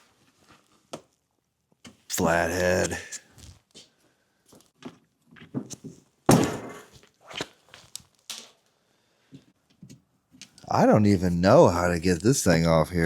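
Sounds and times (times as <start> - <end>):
loud thunk: 6.3 - 6.9.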